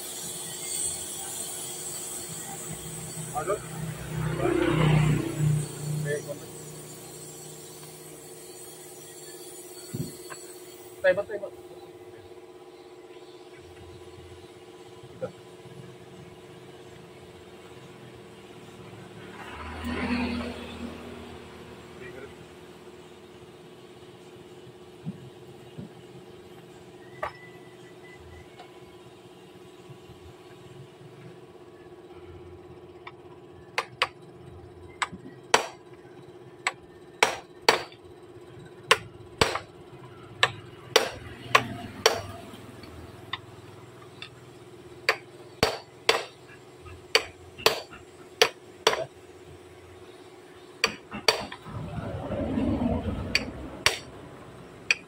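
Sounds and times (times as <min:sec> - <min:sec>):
hammer blows: 0:53.2 - 0:54.2.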